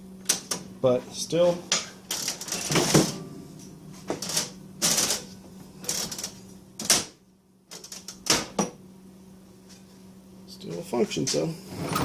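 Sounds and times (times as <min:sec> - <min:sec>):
cash register mechanism clacking: 0:04.2 - 0:06.4.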